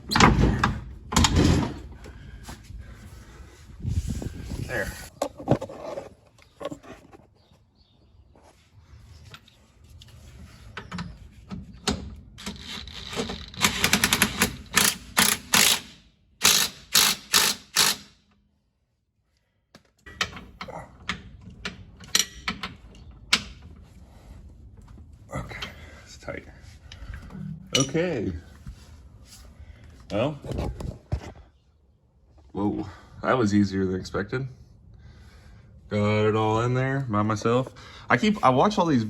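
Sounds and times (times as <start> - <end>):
hand ratchet clicking: 13.5 - 18.2.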